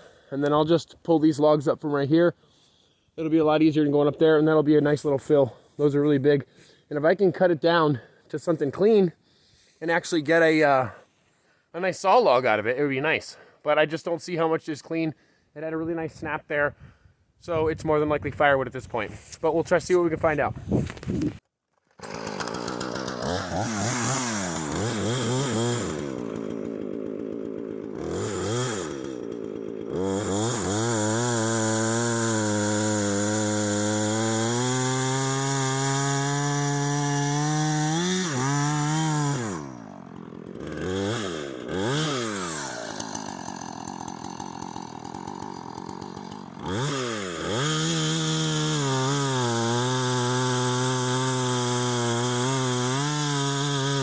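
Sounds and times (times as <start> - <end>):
chainsaw cutting log: 20.9 - 54.0.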